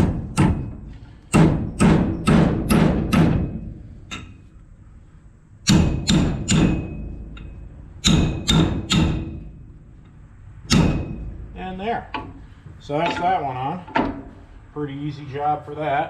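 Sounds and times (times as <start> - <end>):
hammer striking metal pins: 0.0 - 4.5, 5.6 - 9.5, 10.7 - 11.4.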